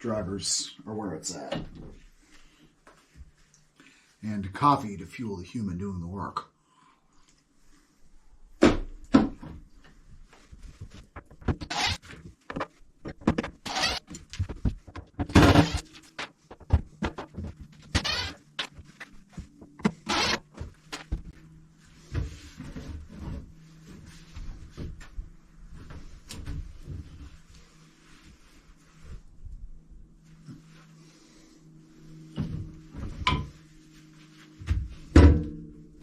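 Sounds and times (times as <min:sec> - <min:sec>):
demolition knocks and scrapes: 0:10.8 - 0:19.0.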